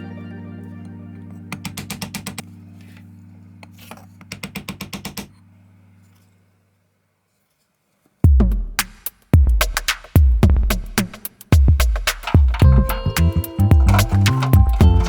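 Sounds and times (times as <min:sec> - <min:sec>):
electronic music with heavy drums: 0:08.3 - 0:15.0
fan motor humming with ticking: 0:12.2 - 0:15.0.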